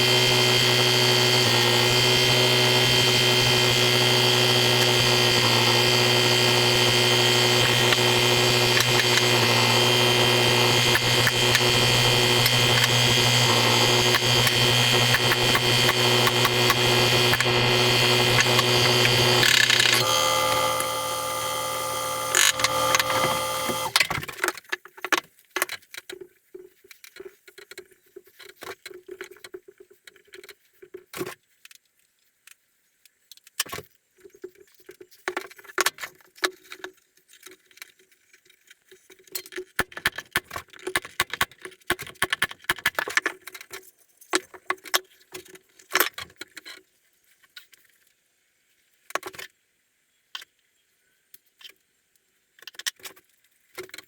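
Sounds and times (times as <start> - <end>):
power tool humming: 0.0 - 24.2.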